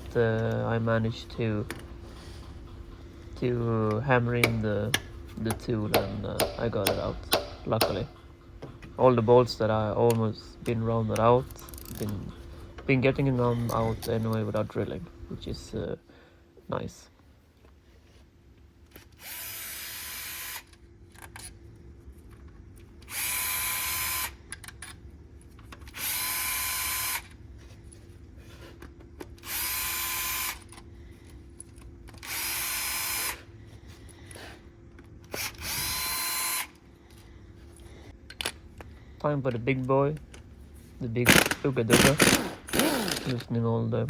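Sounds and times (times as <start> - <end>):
cordless drill whining: 19.2 - 20.7, 23.0 - 24.4, 25.9 - 27.3, 29.4 - 30.7, 32.2 - 33.4, 35.3 - 36.8, 41.3 - 43.4.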